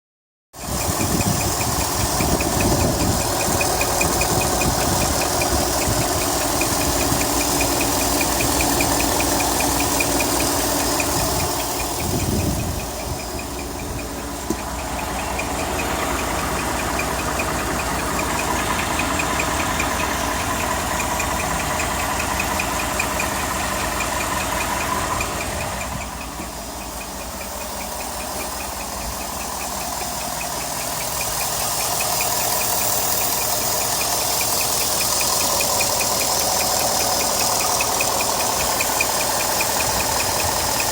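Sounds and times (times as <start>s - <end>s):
truck engine idling: 0.6s - 40.9s
high-pitched squeak chirp: 14.8s - 40.9s.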